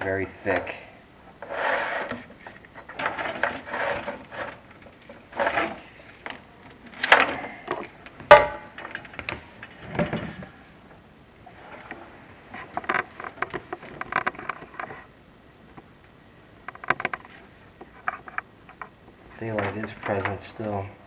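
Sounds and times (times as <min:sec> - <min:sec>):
camera rod scraping flue tile: 0:01.4 - 0:04.6.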